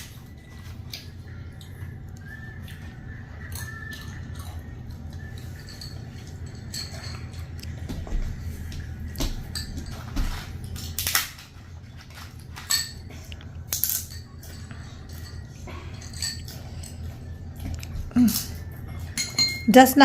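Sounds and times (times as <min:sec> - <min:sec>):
chewing: 0:00.0 - 0:07.9, 0:14.3 - 0:19.2
low hum: 0:00.0 - 0:20.0
utensils clicking on plates: 0:03.4 - 0:07.9, 0:12.2 - 0:20.0.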